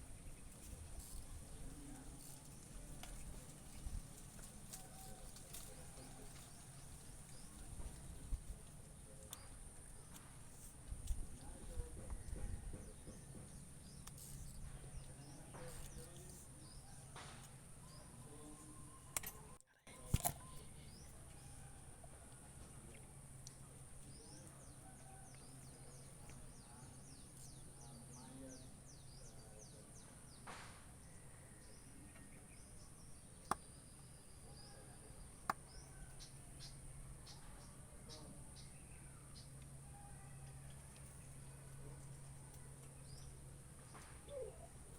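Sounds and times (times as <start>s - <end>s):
faint bird chirps: 17.8s - 21.8s, 24.0s - 44.9s.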